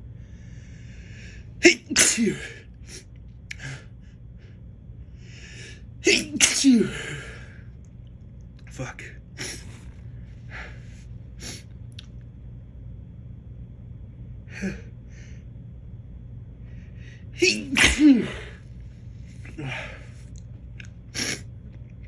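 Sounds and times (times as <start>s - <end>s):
man sneezing loudly: 1.6s - 2.6s, 6.1s - 7.2s, 17.4s - 18.6s
man sniffing: 9.4s - 10.0s, 11.4s - 11.7s, 21.2s - 21.5s.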